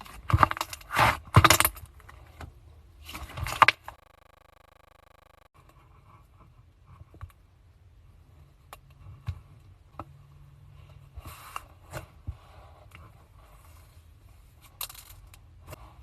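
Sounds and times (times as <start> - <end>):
low hum: 3.9 - 5.5.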